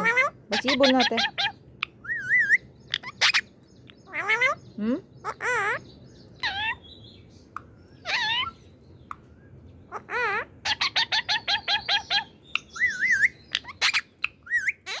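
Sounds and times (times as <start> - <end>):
parakeet rapid chirps: 0.0 - 4.6, 5.2 - 6.9, 9.9 - 15.0
parakeet harsh calls: 0.0 - 6.9, 8.0 - 8.6, 9.8 - 15.0
parakeet warbling whistles: 10.0 - 15.0.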